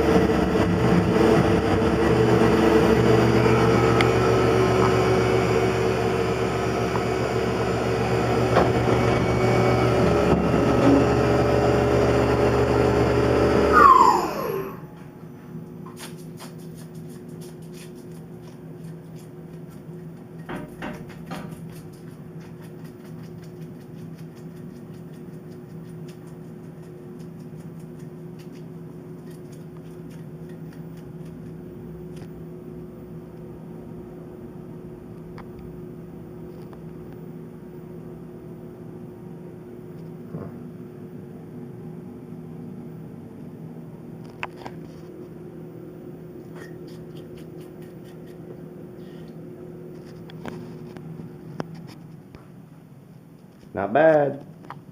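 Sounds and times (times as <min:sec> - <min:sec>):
cnc mill spindle running: 0:00.0 - 0:14.8
spindle winding down whine: 0:00.0 - 0:15.0
steady machine hum: 0:00.0 - 0:15.7.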